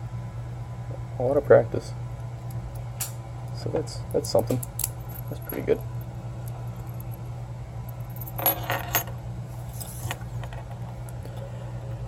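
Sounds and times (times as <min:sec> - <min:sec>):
small metal parts clinking: 0:04.1 - 0:05.8, 0:07.9 - 0:10.7.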